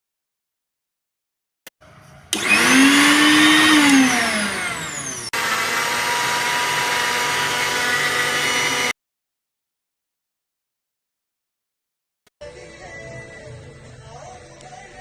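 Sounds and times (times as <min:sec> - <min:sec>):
mixer grinder motor whining: 0:02.3 - 0:09.0.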